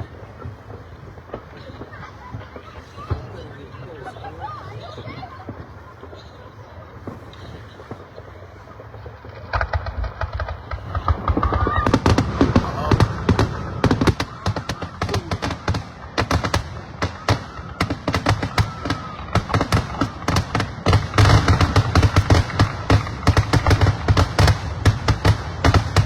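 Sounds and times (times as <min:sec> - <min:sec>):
fireworks bangs and crackles: 0:00.0 - 0:26.0.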